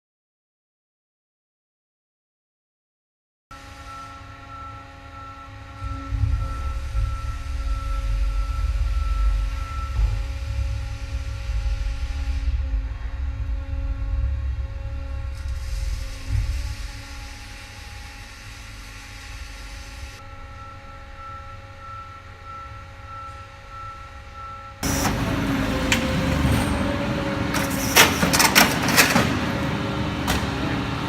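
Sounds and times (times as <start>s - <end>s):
loud rumbling noise: 3.6s - 20.2s, 24.8s - 31.0s
hydraulic power unit humming: 3.6s - 31.0s.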